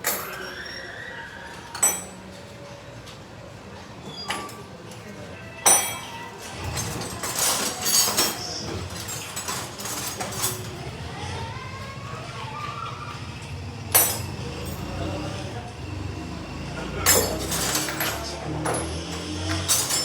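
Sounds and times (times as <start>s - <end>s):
hand tools clinking on metal: 0.0s - 0.6s, 1.7s - 2.3s, 5.6s - 10.8s, 13.9s - 15.4s, 16.8s - 20.0s.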